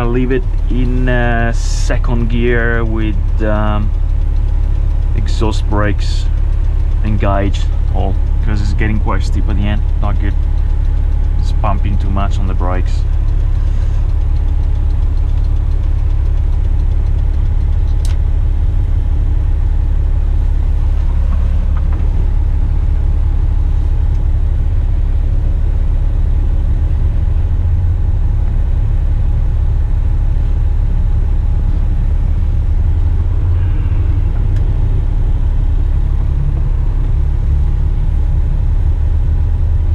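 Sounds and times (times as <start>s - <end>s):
diesel engine drone: 0.0s - 39.9s
sharp click: 13.3s - 18.3s.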